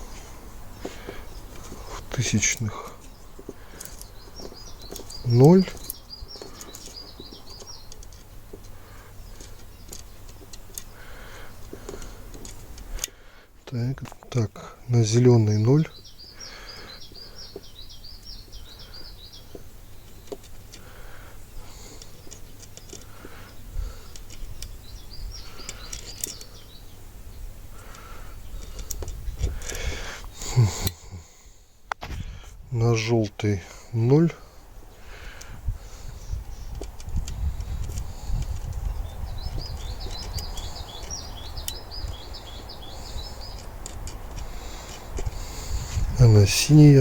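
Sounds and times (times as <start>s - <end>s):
birds chirping: 0.0s - 47.0s
songbird warbling: 15.9s - 31.2s, 34.0s - 47.0s.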